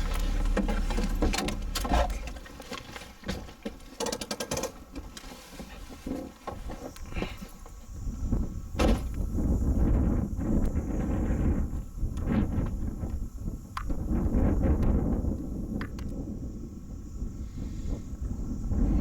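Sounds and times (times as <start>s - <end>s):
vehicle engine rumble: 0.0s - 4.0s
loose rattles and knocks: 0.0s - 7.6s.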